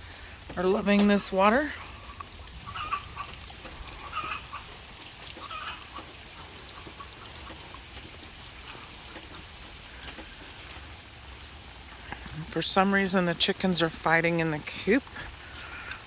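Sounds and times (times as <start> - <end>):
steady rain falling: 0.0 - 16.0
hen calls: 1.6 - 7.4.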